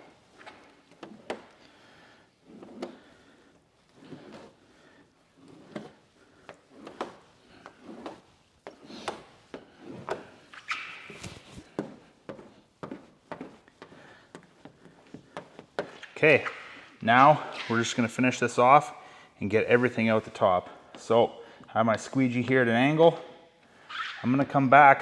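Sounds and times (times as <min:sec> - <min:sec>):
squeegee scraping on film: 0:02.4 - 0:11.8
brief squeak: 0:10.5 - 0:11.6, 0:23.9 - 0:24.3.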